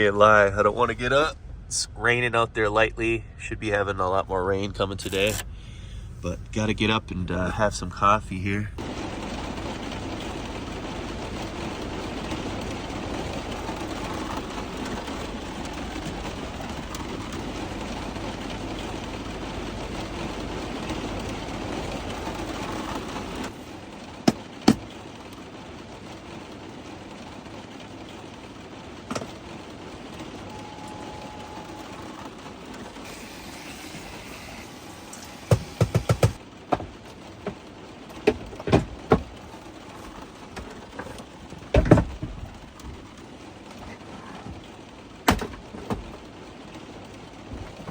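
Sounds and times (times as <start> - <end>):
van engine idling: 0.0 - 47.9
heater running: 29.0 - 37.6
sharp clicks and knocks: 35.5 - 39.4.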